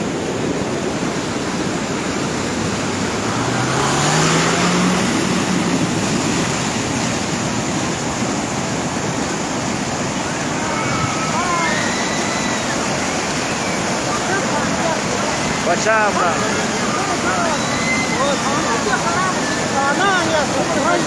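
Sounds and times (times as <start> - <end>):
floodwater rushing: 0.0 - 21.0
water splashing: 0.0 - 21.0
vehicle engine revving: 1.8 - 9.2.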